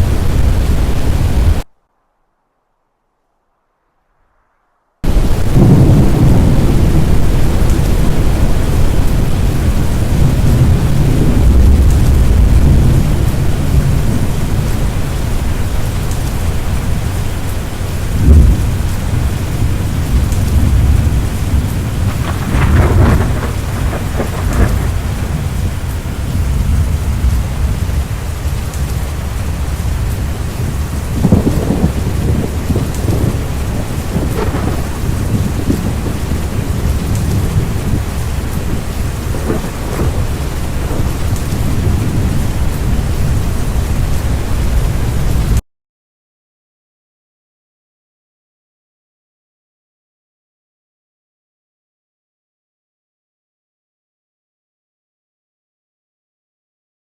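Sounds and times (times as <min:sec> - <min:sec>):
heavy rain: 0:00.0 - 0:01.7, 0:05.0 - 0:45.6
low rumble of thunder: 0:05.0 - 0:45.6
thunder cracks: 0:05.0 - 0:45.6.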